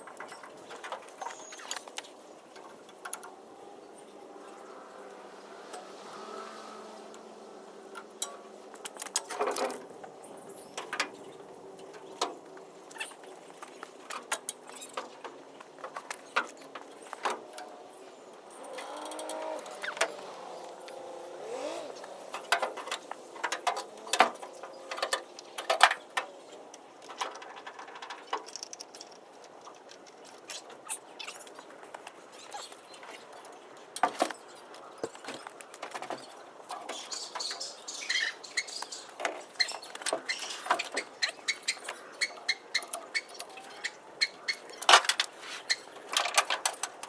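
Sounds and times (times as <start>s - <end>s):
short creaks: 18.6s - 23.1s, 27.4s - 47.0s.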